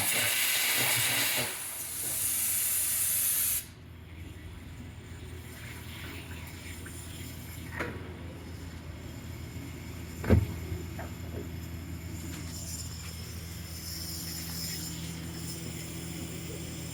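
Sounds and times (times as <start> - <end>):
low machine hum: 3.7 - 16.9
sharp knocks: 10.2 - 10.7.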